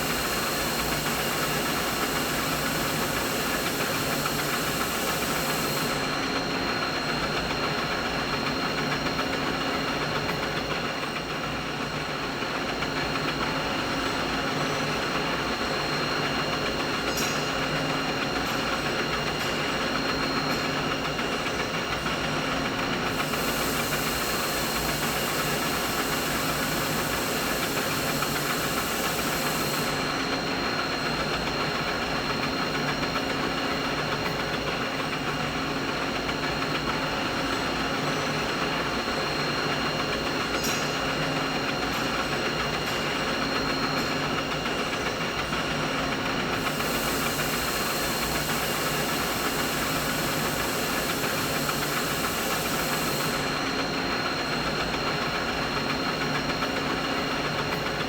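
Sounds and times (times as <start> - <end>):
high bright hiss: 46.6 - 53.5.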